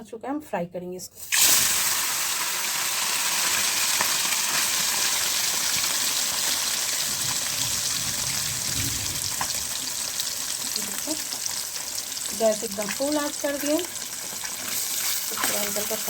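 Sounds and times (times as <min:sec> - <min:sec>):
fish sizzling in hot oil: 0:01.2 - 0:16.0
oil crackling and spitting: 0:01.3 - 0:13.0.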